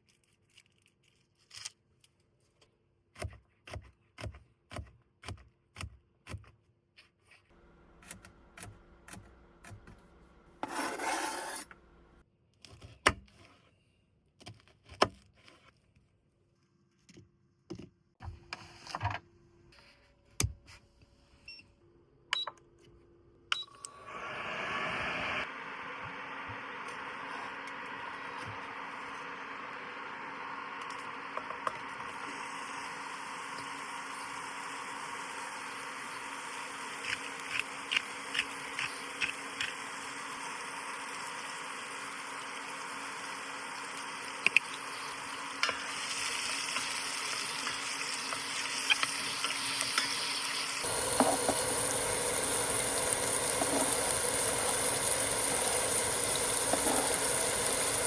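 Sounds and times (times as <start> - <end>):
steady rushing hiss: 44.5 - 58.0.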